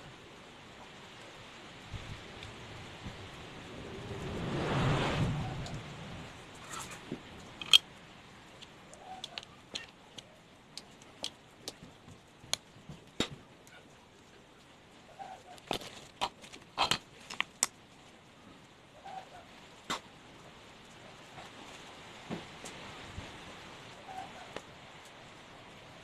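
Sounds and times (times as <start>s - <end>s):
metal parts and tools clicking: 7.6s - 7.8s, 8.6s - 10.0s, 15.6s - 17.7s.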